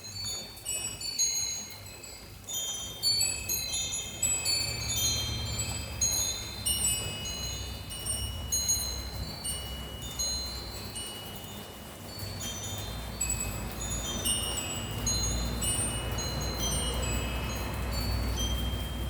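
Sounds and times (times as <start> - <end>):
wind chime ringing: 0.0 - 19.0.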